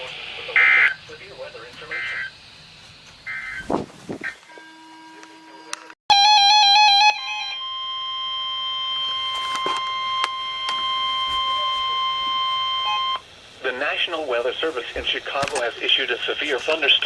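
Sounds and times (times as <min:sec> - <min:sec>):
warbling electronic alarm: 0:00.0 - 0:02.5, 0:03.2 - 0:03.6, 0:04.2 - 0:13.3
steady warning alert tone: 0:07.0 - 0:13.3.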